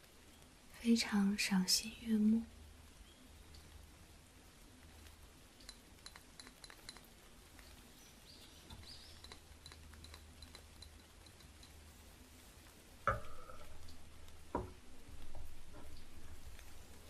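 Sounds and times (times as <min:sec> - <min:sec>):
low steady hum: 0:00.0 - 0:17.0
faint light ticks: 0:02.8 - 0:12.0.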